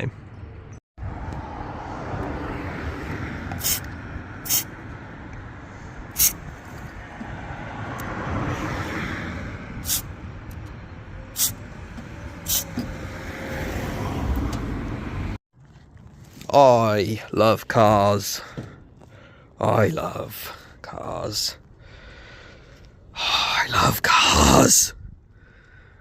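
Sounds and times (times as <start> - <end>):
road traffic noise: 0.0 - 26.0
aerosol can hissing: 3.6 - 3.9, 4.5 - 4.7, 6.2 - 6.4, 9.8 - 10.1, 11.4 - 11.6, 12.5 - 12.8.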